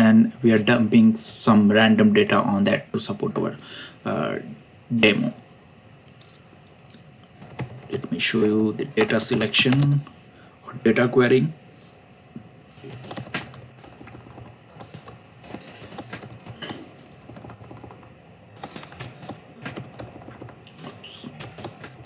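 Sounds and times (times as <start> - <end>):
keyboard typing clicks: 12.9 - 20.8, 21.4 - 22.0.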